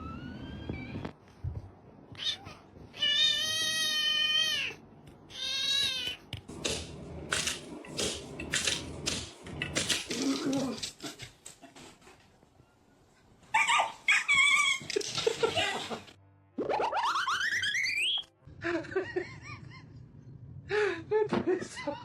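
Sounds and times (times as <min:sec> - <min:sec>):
cat meowing: 0:02.2 - 0:06.2.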